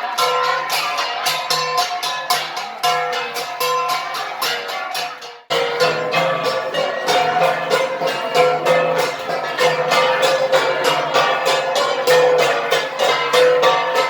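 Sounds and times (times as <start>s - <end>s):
bronze gongs ringing: 5.5s - 14.0s.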